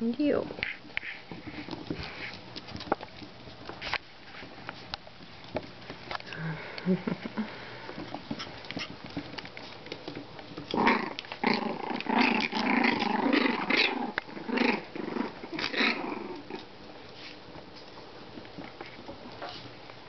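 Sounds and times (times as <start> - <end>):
puppies growling: 5.2 - 17.1.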